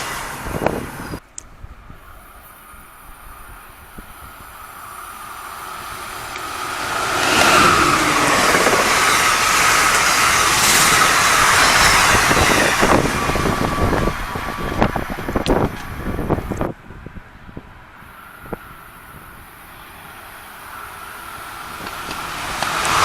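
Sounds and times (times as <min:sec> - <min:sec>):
wind gusting on microphone: 0:00.0 - 0:23.0
train wheels rumbling on rails: 0:03.5 - 0:16.8, 0:18.1 - 0:23.0.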